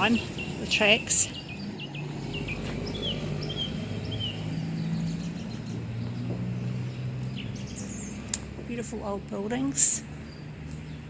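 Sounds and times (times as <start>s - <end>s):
bird chirps: 0.0s - 8.3s
vehicle engine running: 0.0s - 11.0s.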